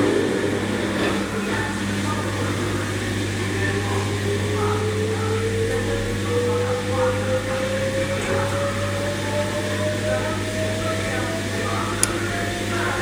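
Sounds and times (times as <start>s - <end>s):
washing machine motor speeding up: 0.0s - 13.0s.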